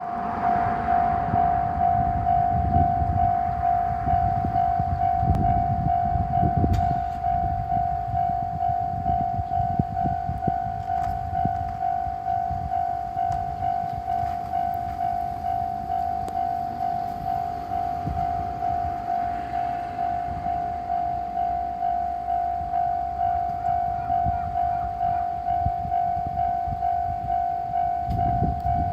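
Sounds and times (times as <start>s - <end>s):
low rumble: 0.0s - 21.4s
level-crossing warning bell: 0.0s - 28.9s.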